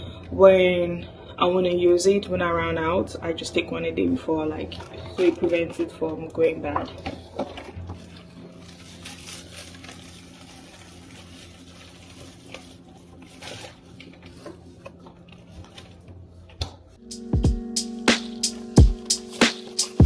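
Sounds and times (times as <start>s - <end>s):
low steady hum: 0.0s - 19.1s
groceries rustling and knocking: 4.7s - 16.9s.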